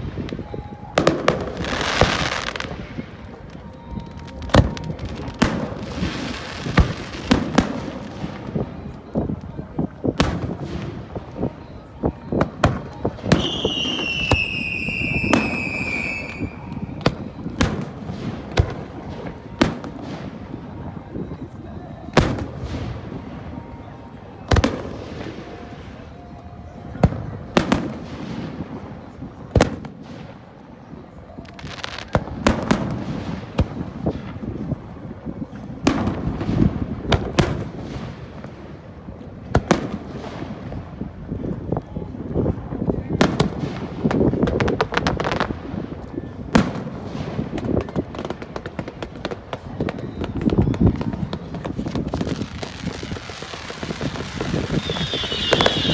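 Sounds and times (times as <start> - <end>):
fireworks booming: 0.0 - 55.9
high falling whistle: 13.3 - 17.1, 54.7 - 55.9
firework shells bursting: 52.5 - 55.9.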